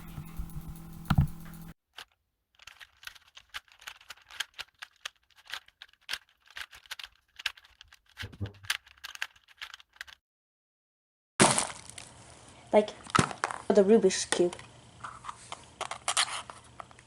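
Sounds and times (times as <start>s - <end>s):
plastic puzzle cube clicking: 2.0s - 10.2s.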